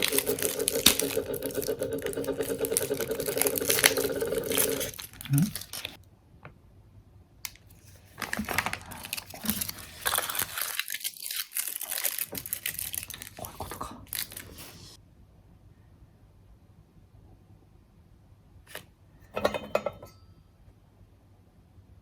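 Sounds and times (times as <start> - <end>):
crinkling and tearing: 0.0 - 6.0, 7.5 - 15.0.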